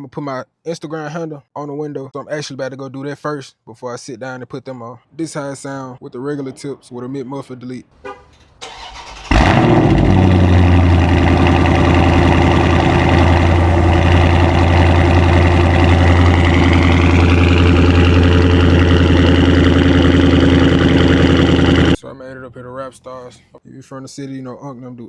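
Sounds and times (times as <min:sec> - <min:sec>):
car engine idling deep exhaust: 0:08.0 - 0:22.0.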